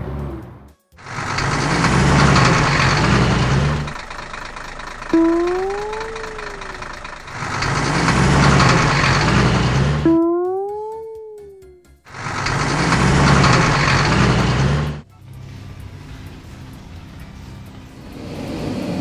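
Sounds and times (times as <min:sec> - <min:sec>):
cartoon engine rumbling: 0:01.0 - 0:19.0
rising and falling tone: 0:05.1 - 0:15.0.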